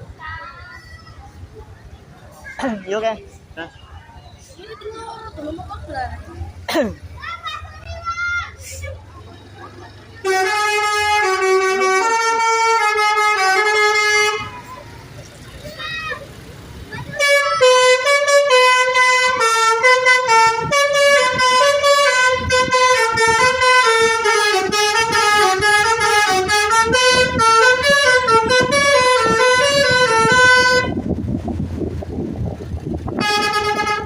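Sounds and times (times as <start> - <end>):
musical air horn tune: 10.3 - 14.5, 17.2 - 31.0, 33.2 - 34.0
low rumbling noise: 18.2 - 34.0.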